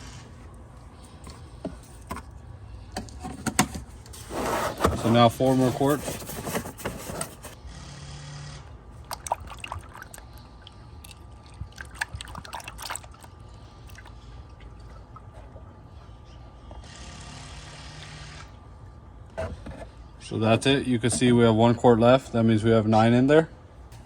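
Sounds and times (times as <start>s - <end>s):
oil pouring through a funnel: 9.0s - 15.3s.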